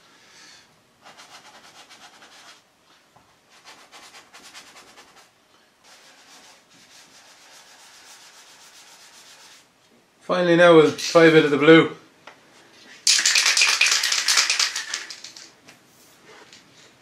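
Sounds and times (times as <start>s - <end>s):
sandpaper rasping on block: 5.9s - 9.7s.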